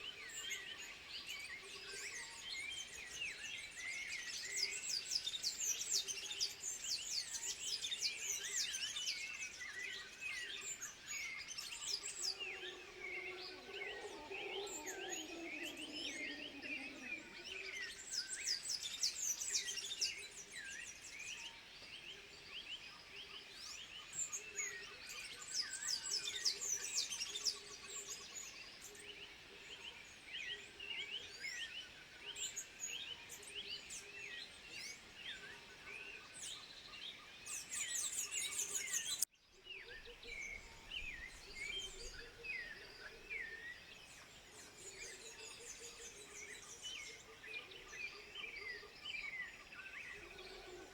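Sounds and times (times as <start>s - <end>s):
birds chirping and trilling: 0.0s - 21.7s, 23.0s - 50.9s.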